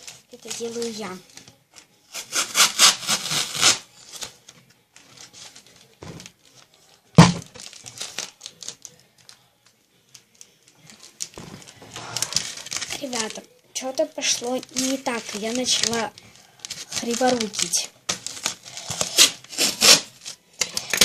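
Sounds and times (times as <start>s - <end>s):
adhesive tape ripping: 2.1s - 4.3s, 16.7s - 21.0s.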